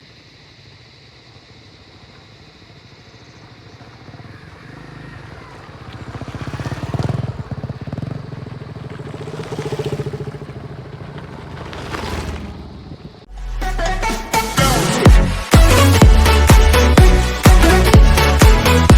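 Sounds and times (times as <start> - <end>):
motorcycle engine revving: 3.2 - 13.3.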